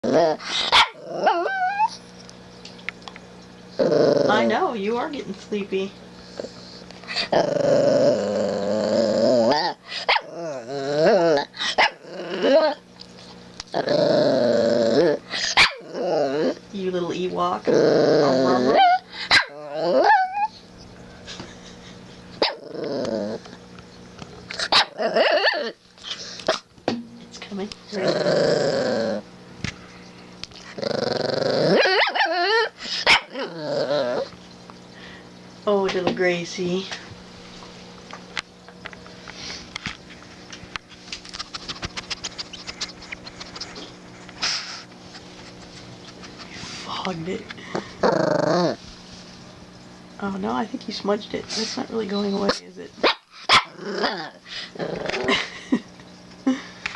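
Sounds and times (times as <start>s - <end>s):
puppy grumbling and whining: 0.0s - 2.2s, 3.7s - 5.1s, 6.3s - 23.7s, 24.4s - 26.7s, 27.6s - 29.4s, 30.5s - 34.4s, 40.8s - 49.2s, 53.4s - 55.7s
puppy sniffing: 39.1s - 39.8s, 40.8s - 48.0s, 51.4s - 52.6s
quick clicks and scratches: 39.8s - 46.6s.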